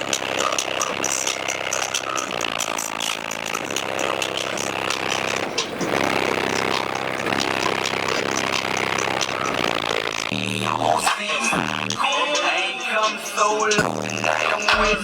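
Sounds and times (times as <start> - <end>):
vehicle engine revving with crackles: 0.0 - 12.0
music with heavy bass: 0.0 - 15.0.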